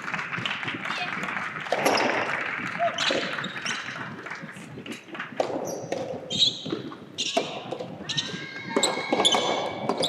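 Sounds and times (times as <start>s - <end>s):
large hall noise: 0.0s - 10.0s
ball hitting rackets and floor: 1.2s - 4.0s, 4.8s - 10.0s.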